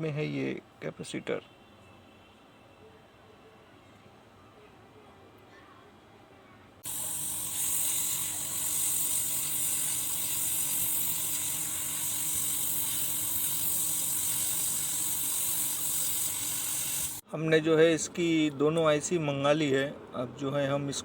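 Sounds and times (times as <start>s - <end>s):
hot-air gun hissing: 6.8s - 17.2s.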